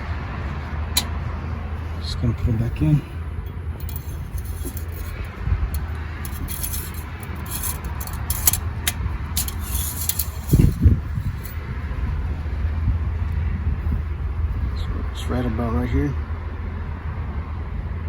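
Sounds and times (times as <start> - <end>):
low background rumble: 0.0 - 18.0
dipstick metallic clicks and scrapes: 3.4 - 11.6.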